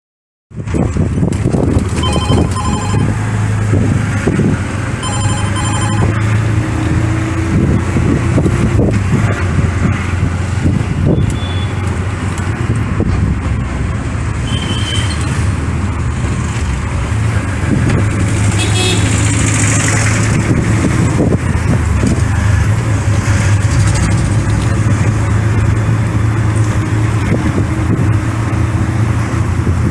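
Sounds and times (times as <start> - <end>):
road traffic engine drone: 0.5 - 29.9
rapid pulsed beeping: 2.0 - 3.4, 5.0 - 6.4
brief high tone: 2.0 - 3.6, 5.0 - 6.7.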